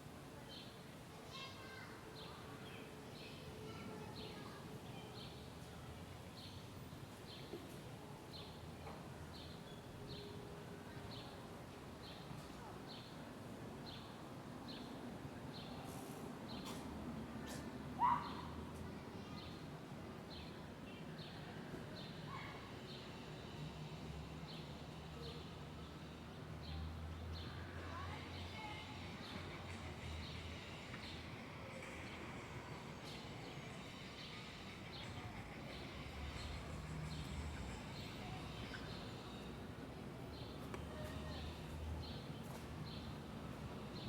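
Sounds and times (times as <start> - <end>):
low hum of city noise: 0.0 - 44.0
traffic hum: 26.0 - 44.0.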